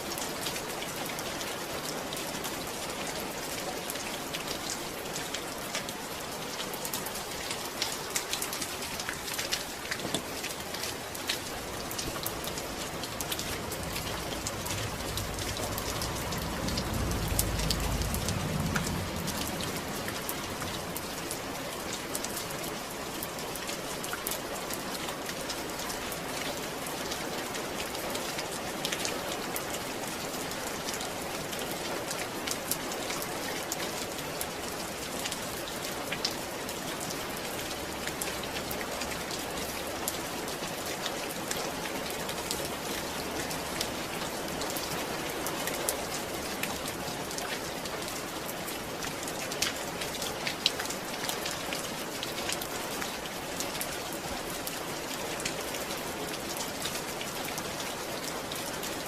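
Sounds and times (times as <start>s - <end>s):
steady rain falling: 0.0s - 59.0s
low rumble: 12.2s - 21.5s.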